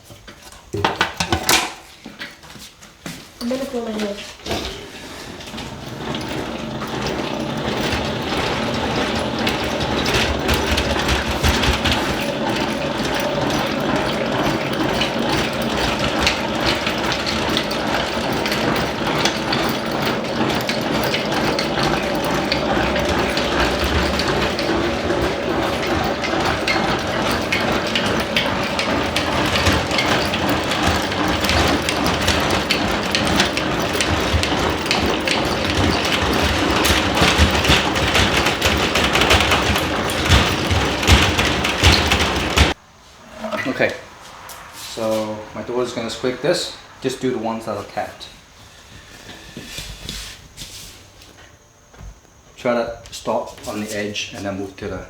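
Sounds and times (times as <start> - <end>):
honey extractor clicking whir: 4.4 - 42.8.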